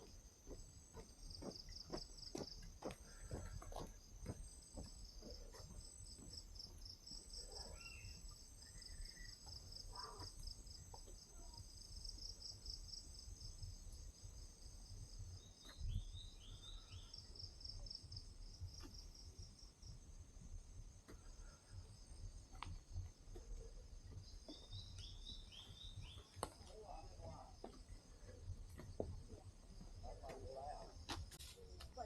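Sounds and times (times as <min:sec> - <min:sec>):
insects trilling: 0:00.4 - 0:20.2, 0:21.1 - 0:32.0
bird chirps: 0:07.5 - 0:10.2, 0:24.5 - 0:26.4.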